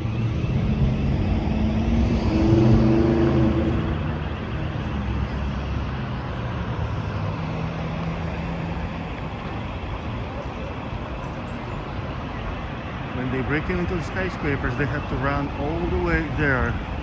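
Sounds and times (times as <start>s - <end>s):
traffic rumble: 0.0s - 17.0s
vehicle passing: 0.0s - 17.0s.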